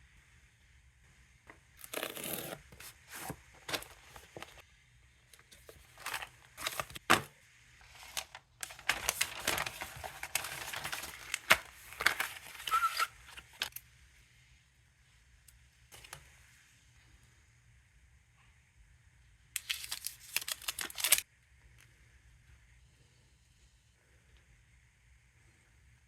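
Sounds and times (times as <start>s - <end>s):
packaging tearing and crinkling: 1.8s - 4.6s, 5.6s - 13.8s, 19.6s - 21.2s.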